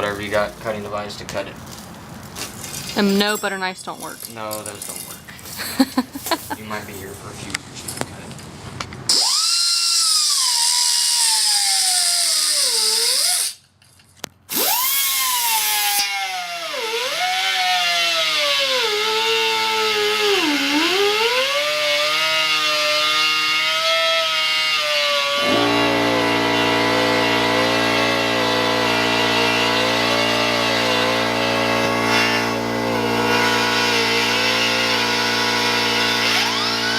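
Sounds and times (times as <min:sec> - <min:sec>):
pneumatic grinder cutting steel: 0:09.1 - 0:13.6, 0:14.5 - 0:36.9
steady low-pitched hum: 0:25.4 - 0:36.9.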